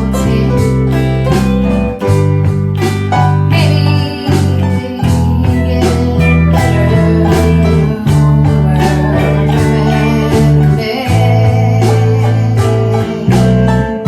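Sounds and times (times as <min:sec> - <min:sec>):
band music with guitar: 0:00.0 - 0:14.0
bass line: 0:00.0 - 0:14.0
steady drum beat: 0:00.0 - 0:14.0.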